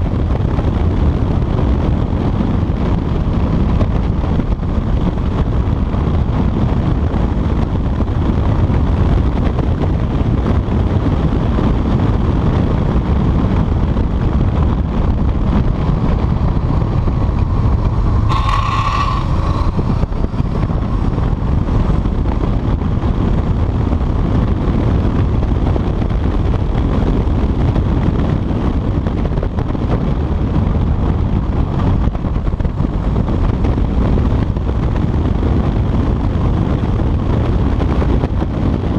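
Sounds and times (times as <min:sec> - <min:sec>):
motorcycle engine running: 0:00.0 - 0:38.9
wind buffeting microphone: 0:00.0 - 0:38.9.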